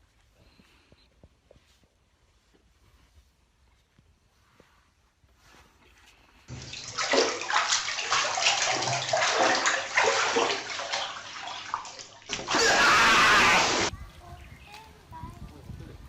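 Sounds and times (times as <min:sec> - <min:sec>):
water splashing and sloshing: 0:06.3 - 0:13.9.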